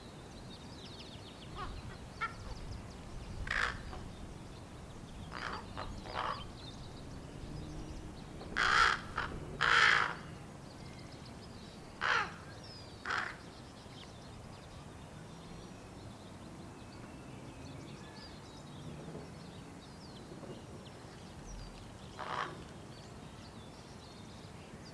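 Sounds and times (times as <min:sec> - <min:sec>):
young ravens begging calls: 0:01.5 - 0:02.6, 0:03.4 - 0:04.2, 0:05.3 - 0:06.6, 0:08.6 - 0:10.3, 0:12.0 - 0:13.5, 0:22.2 - 0:22.7.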